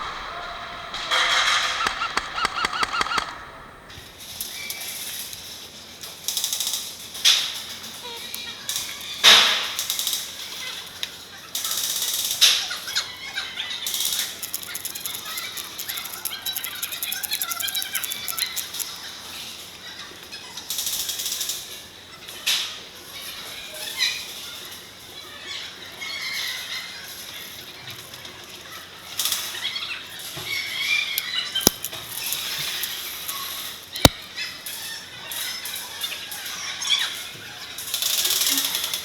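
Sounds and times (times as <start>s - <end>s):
small clicks: 0.0s - 4.1s, 14.0s - 19.1s, 31.6s - 33.0s
sharp cracks: 0.0s - 4.3s, 14.0s - 19.0s, 31.6s - 33.0s.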